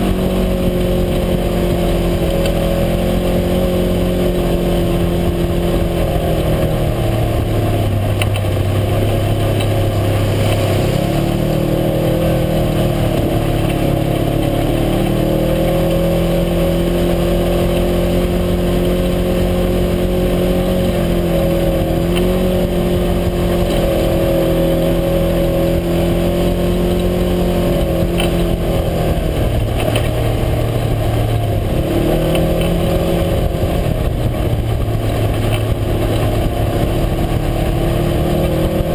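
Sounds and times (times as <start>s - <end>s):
vehicle engine running: 0.0s - 38.9s.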